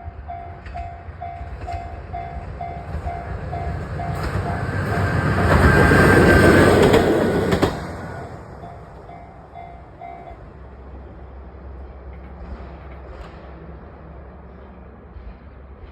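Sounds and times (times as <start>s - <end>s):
crossing warning bell dinging: 0.0s - 11.0s
train wheels clattering: 0.2s - 10.4s, 11.7s - 15.9s.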